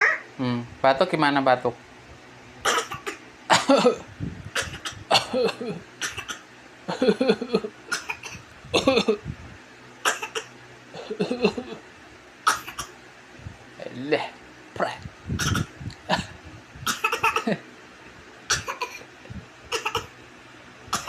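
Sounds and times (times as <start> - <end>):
baby coughing: 2.6 - 6.5, 7.9 - 9.2, 10.0 - 11.8, 12.4 - 13.0, 15.4 - 17.6, 18.5 - 19.1, 19.7 - 20.1.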